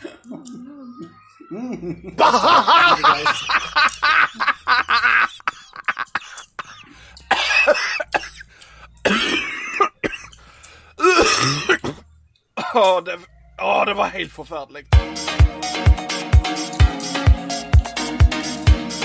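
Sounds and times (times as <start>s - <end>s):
person coughing: 6.2s - 8.4s, 9.0s - 10.3s, 11.0s - 12.0s.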